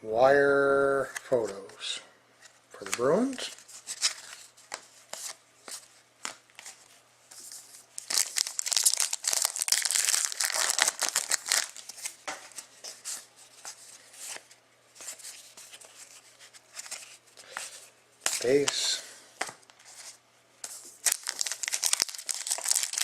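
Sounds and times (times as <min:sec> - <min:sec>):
cards rustling: 0:02.8 - 0:23.0
foil wrapper tearing and crinkling: 0:08.0 - 0:12.0, 0:21.0 - 0:23.0.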